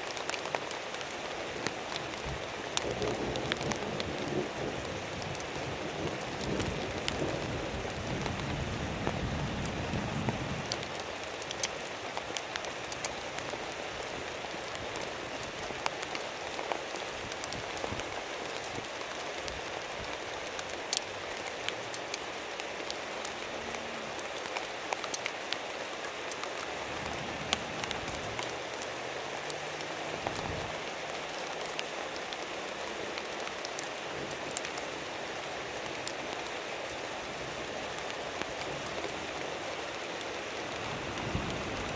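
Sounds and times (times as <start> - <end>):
heavy rain falling: 0.0 - 41.9.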